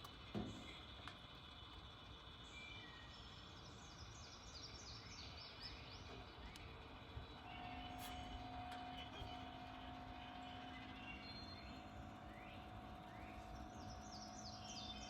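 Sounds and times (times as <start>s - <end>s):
steady low hum: 0.0s - 15.0s
low outdoor rumble: 5.7s - 15.0s
bird singing descending notes: 7.2s - 15.0s.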